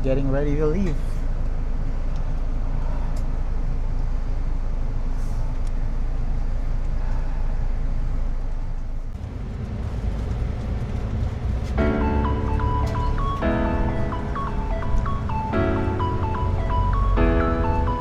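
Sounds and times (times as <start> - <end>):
bus engine rumble: 0.0 - 18.0.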